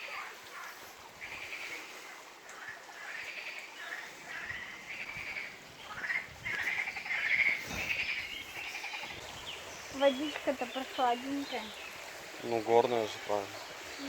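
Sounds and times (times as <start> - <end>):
frogs croaking in chorus: 0.0 - 14.0.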